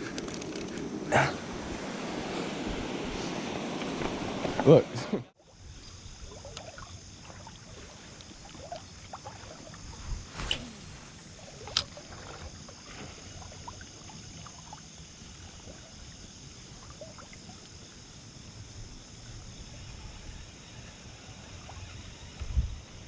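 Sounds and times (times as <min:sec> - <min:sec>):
wind rumble on microphone: 0:00.0 - 0:06.4, 0:09.6 - 0:12.7, 0:18.6 - 0:23.0
creek water running: 0:00.0 - 0:19.6.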